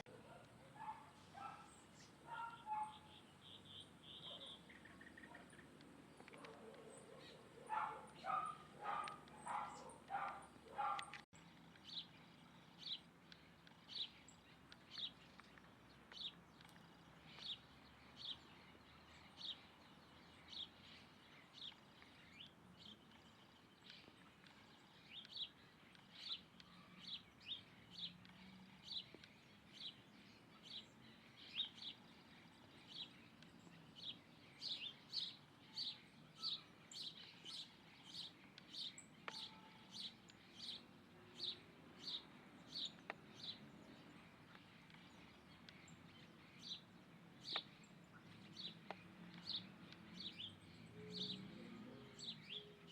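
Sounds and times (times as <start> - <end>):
small bird chirping: 0.0 - 52.9
dog barking: 0.1 - 3.1, 4.2 - 4.6, 6.4 - 11.2.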